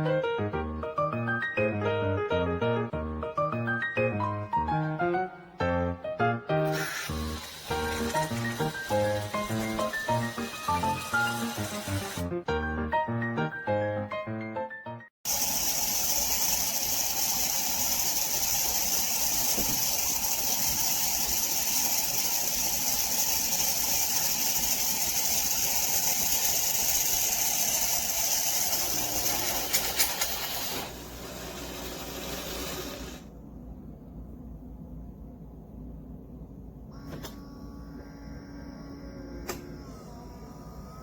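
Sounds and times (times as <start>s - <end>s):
music: 0.0s - 15.2s
espresso machine hissing: 6.7s - 12.3s, 15.2s - 33.3s.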